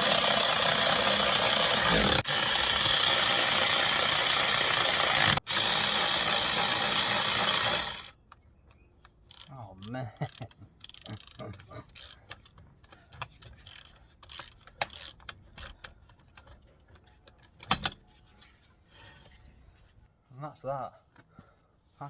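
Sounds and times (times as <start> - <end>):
metallic clicks of hand tools: 9.0 - 16.5
socket wrench ratcheting: 9.2 - 12.4, 13.6 - 15.9.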